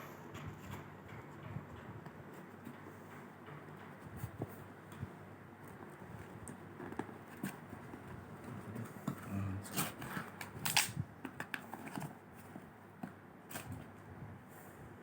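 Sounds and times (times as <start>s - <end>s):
packaging rustling scrapes: 6.7s - 12.8s.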